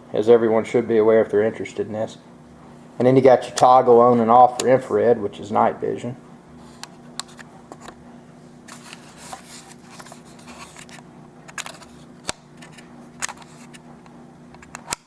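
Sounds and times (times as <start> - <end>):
hands rubbing plastic camcorder: 8.7 - 13.8.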